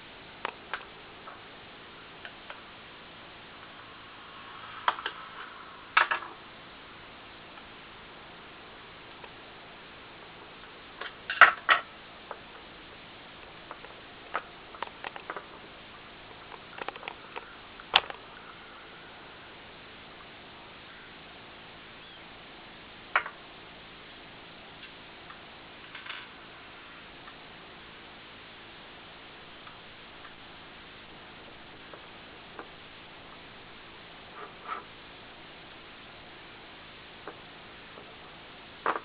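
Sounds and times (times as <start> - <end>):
steady hiss: 0.0 - 39.0.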